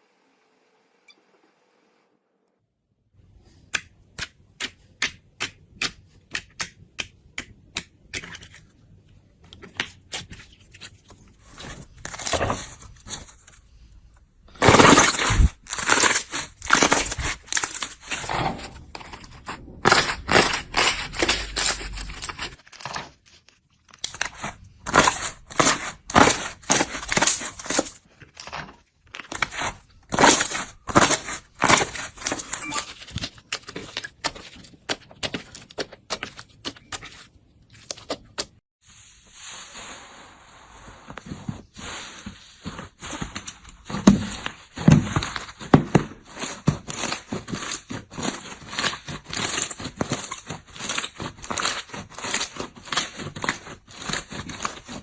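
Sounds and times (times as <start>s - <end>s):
slime clicking and crunching: 14.5s - 18.2s, 46.2s - 55.0s.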